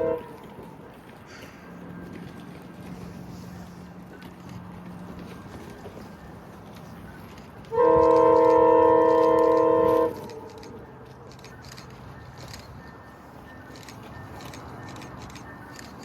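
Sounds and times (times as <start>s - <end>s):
locomotive air horn blast: 0.0s - 0.8s, 7.7s - 10.5s.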